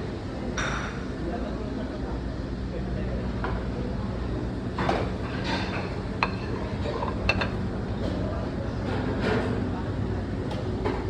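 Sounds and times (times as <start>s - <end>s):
low background hum: 0.0s - 11.0s
utensils clinking against dishes: 4.9s - 8.2s.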